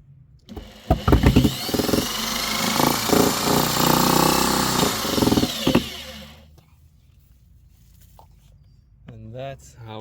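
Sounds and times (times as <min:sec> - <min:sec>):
clattering knocks: 0:00.5 - 0:03.7
motor whirring: 0:00.5 - 0:06.4.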